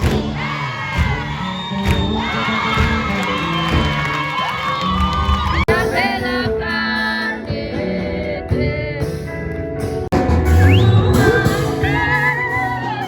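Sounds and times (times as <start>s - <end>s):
music with singing voice: 5.5s - 13.0s
music with heavy bass: 8.5s - 13.0s.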